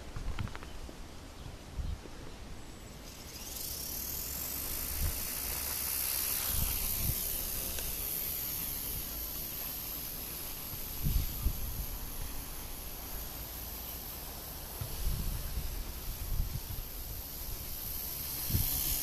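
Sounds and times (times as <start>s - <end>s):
rc helicopter motor whine: 2.8s - 19.0s
wind on microphone: 6.4s - 7.7s, 10.7s - 12.3s, 14.8s - 17.8s, 18.4s - 19.0s.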